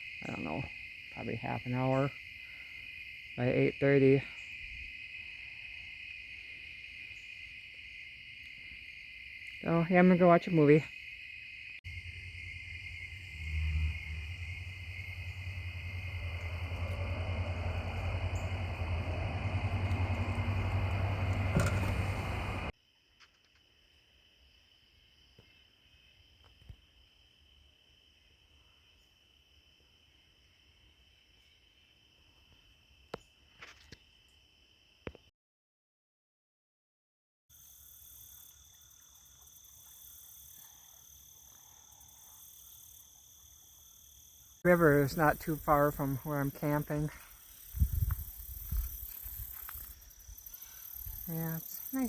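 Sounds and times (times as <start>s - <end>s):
insects chirping: 0.0s - 35.2s, 37.5s - 52.0s
motor humming: 11.9s - 22.7s.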